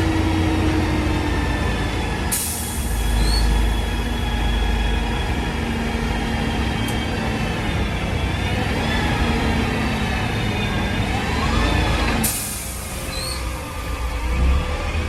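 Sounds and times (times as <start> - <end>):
bus rumbling: 0.0 - 15.0
air hiss: 2.3 - 3.6.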